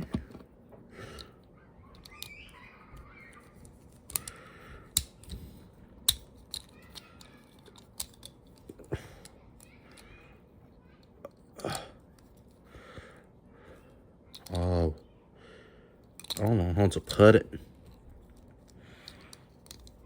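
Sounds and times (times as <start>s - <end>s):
plastic parts scraping: 0.0s - 0.5s
plastic parts clicking together: 1.1s - 10.2s, 14.3s - 14.6s, 16.0s - 17.2s, 17.8s - 20.0s.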